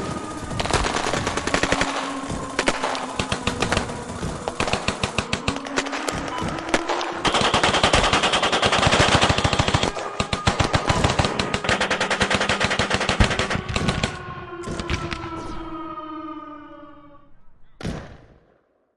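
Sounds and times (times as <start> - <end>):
automatic machine-gun fire: 0.0 - 14.2
steady droning tone: 0.0 - 17.7.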